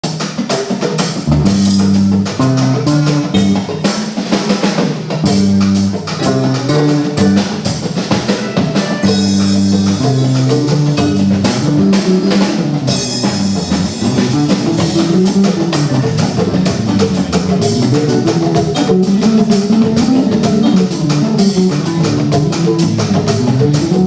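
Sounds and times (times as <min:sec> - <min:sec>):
drum kit beat: 0:00.0 - 0:24.0
low held notes: 0:05.3 - 0:07.6.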